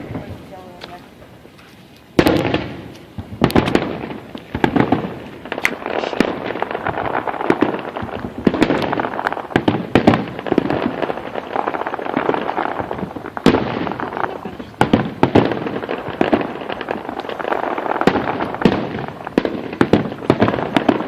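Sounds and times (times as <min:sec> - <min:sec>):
firework crackling: 0:00.0 - 0:21.0
firework shells bursting: 0:02.0 - 0:21.0.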